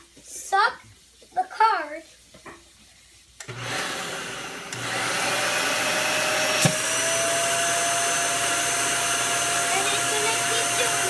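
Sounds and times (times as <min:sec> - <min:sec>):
vacuum cleaner motor whining: 0:03.4 - 0:11.0.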